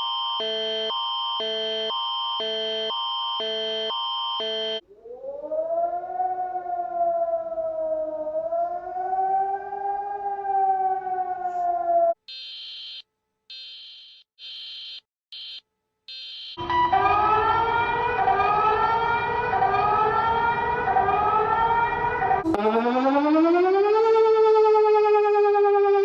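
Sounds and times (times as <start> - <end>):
multi-tone emergency alert signal: 0.0 - 4.8, 12.3 - 26.0
civil defense siren wavering: 0.0 - 12.2, 16.6 - 26.0.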